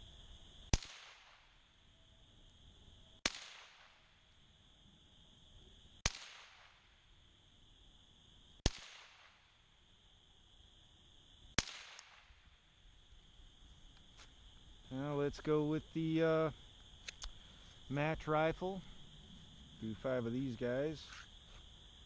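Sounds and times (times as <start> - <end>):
rifle shots with echo: 0.7 - 1.6, 3.2 - 4.1, 6.0 - 6.9, 8.6 - 9.5, 11.6 - 12.4.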